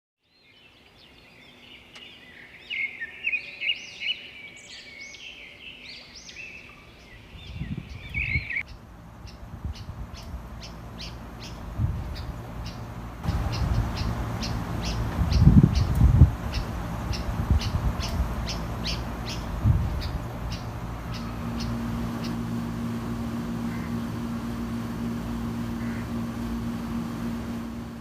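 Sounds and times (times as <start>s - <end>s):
birds chirping: 0.2s - 28.0s
low rumble: 7.4s - 28.0s.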